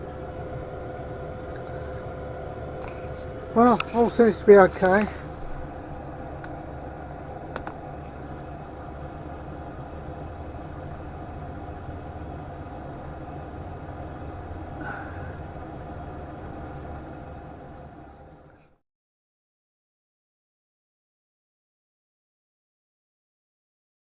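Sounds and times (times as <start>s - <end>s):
heater fan and motor hum: 0.0s - 18.8s.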